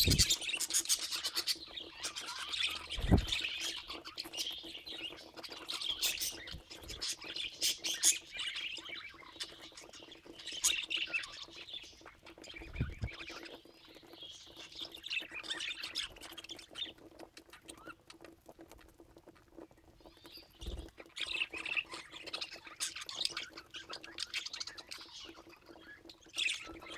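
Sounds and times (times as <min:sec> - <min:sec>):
budgerigars chattering and squawking: 0:00.0 - 0:17.0.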